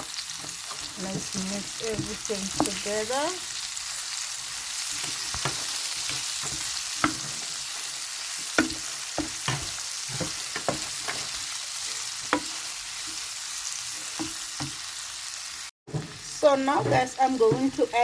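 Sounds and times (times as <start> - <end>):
food sizzling in a pan: 0.0 - 18.0
spoon scraping against pan: 4.8 - 13.3.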